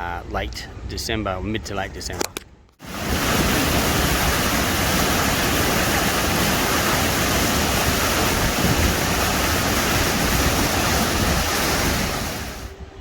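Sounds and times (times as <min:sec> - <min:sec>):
water rushing: 0:02.8 - 0:12.7.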